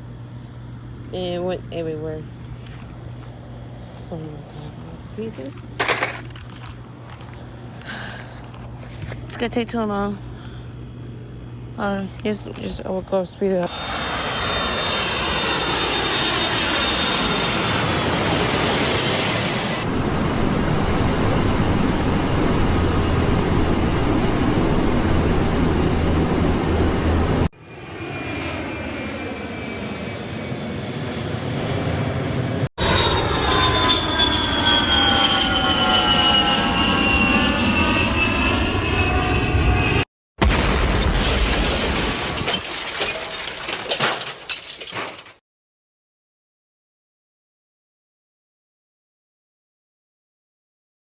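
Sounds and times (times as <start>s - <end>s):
airplane engine passing by: 0.0s - 40.1s.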